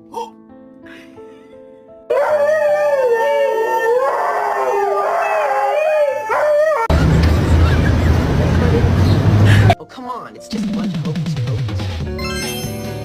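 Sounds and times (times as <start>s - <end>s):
soft background music: 0.0s - 5.0s, 9.8s - 13.0s
dog howling: 2.1s - 6.9s.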